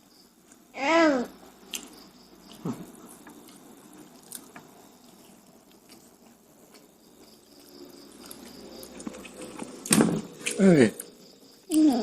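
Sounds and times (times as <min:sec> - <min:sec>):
person chewing fried snacks: 0:01.6 - 0:10.6.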